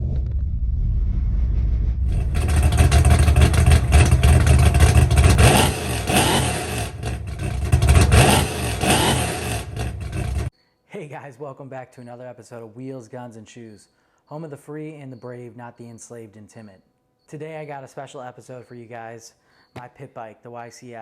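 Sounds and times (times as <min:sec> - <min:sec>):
motorbike engine revving: 0:02.1 - 0:10.5.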